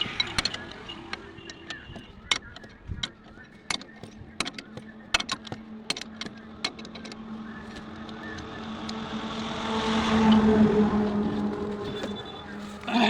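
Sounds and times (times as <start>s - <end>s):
hand tools clicking on metal: 0.0s - 9.0s
vehicle engine hum: 0.0s - 13.0s.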